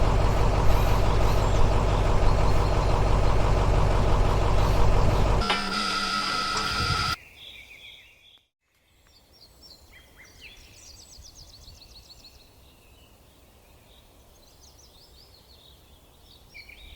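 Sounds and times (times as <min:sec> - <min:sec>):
faint birds chirping: 0:00.0 - 0:05.4
loud machine sound: 0:00.0 - 0:07.2.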